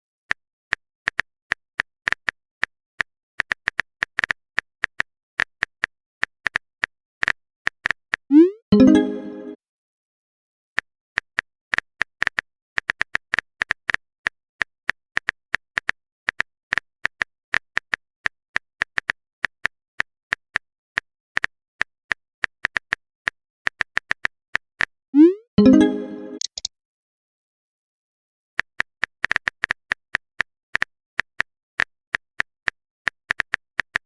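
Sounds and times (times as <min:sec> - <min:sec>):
phone keyboard typing clicks: 0:26.4 - 0:26.7.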